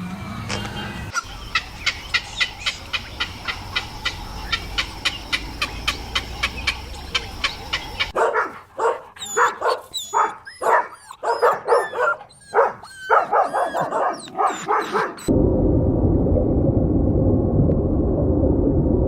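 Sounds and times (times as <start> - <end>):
steady rumbling noise: 1.2 - 8.2, 15.3 - 19.0
dog barking and yipping: 4.5 - 15.3.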